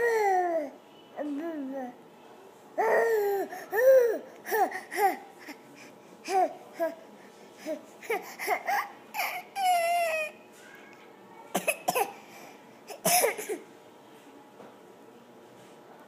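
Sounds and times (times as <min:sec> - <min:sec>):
baby coughing: 0:11.5 - 0:12.2, 0:12.9 - 0:13.6.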